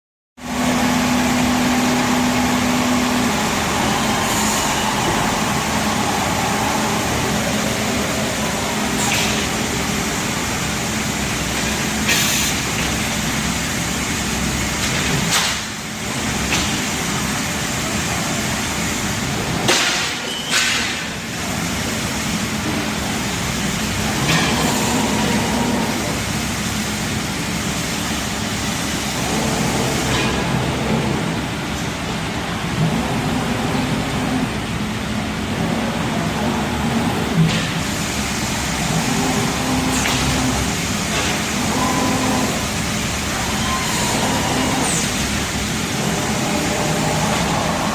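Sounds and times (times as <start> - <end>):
steady hum: 0.4 - 14.9, 21.2 - 47.9
machine mechanical noise: 19.4 - 27.5, 28.6 - 47.9.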